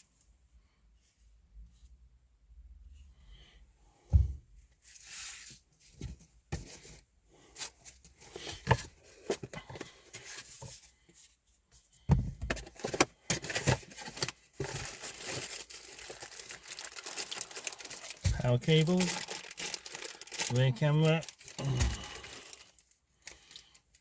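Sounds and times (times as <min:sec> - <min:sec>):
packaging rustling: 0:12.6 - 0:24.0.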